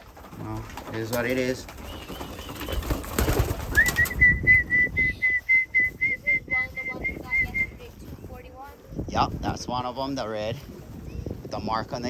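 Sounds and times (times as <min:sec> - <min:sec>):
person whistling short notes: 0:03.8 - 0:07.8.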